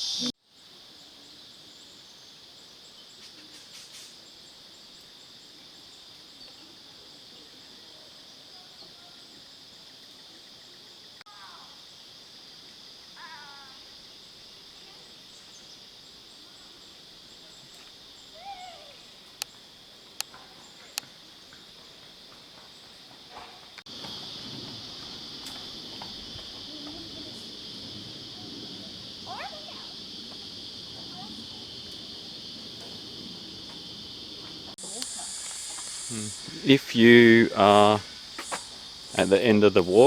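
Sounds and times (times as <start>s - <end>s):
insects chirring: 0.0s - 40.0s.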